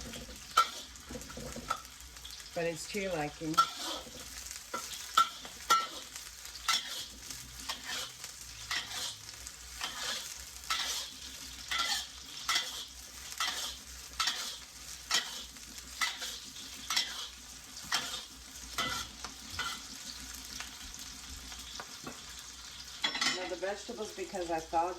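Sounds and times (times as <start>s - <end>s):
utensil scraping a wok: 0.0s - 24.9s
vegetables sizzling in oil: 0.0s - 24.9s.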